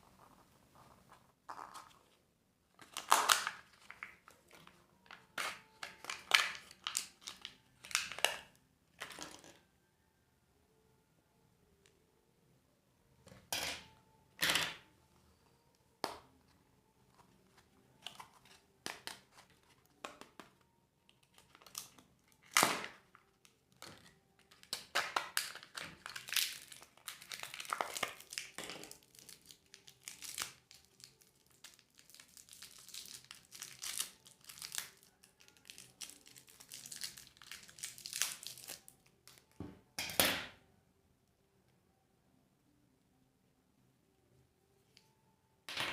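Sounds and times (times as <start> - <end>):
wrappers crinkling and tearing: 5.3 - 8.5, 21.1 - 39.6.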